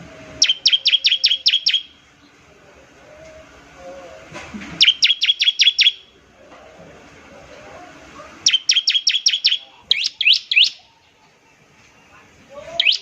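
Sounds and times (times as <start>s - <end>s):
bird singing repeated falling notes: 0.4s - 2.4s, 4.8s - 6.2s, 8.4s - 11.5s, 12.8s - 13.0s.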